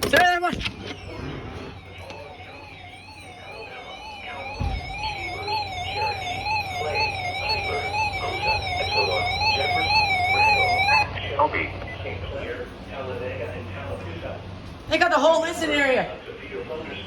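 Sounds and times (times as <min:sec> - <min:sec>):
electronic siren alert warbling: 0:00.7 - 0:11.1
low thump: 0:04.5 - 0:05.2.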